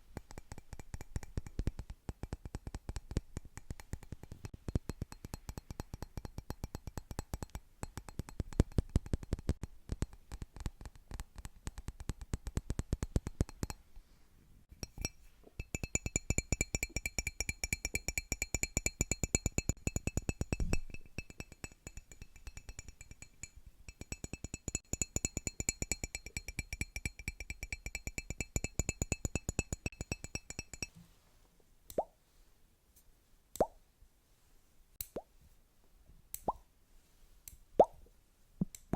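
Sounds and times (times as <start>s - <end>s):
rapid tapping on objects: 0.0s - 13.8s, 14.9s - 30.9s.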